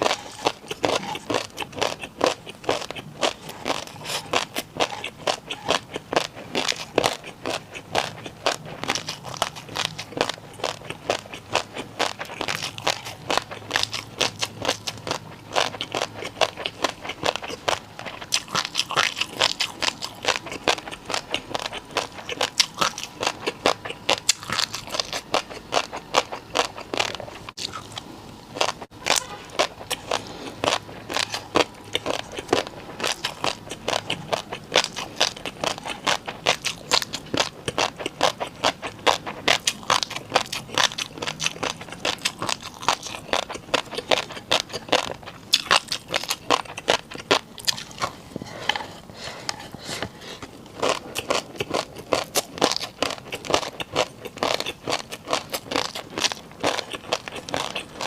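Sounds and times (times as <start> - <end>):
person chewing crunchy food: 0.0 - 58.0.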